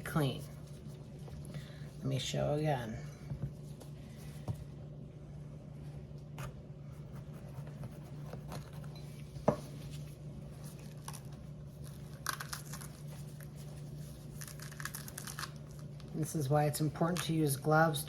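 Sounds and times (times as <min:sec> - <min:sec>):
low steady hum: 0:00.0 - 0:18.0
pepper crinkling and tearing: 0:10.8 - 0:13.6, 0:14.2 - 0:16.2.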